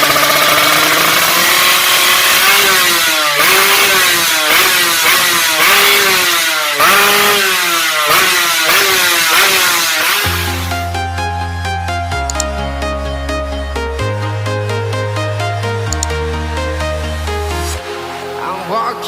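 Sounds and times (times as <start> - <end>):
motorcycle engine revving: 0.0 - 11.4.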